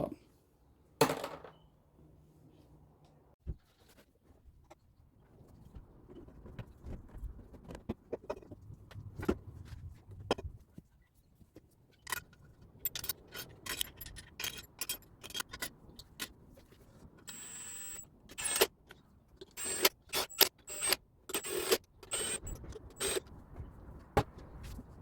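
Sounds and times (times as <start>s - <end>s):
plastic parts clicking and scraping: 11.6s - 17.4s.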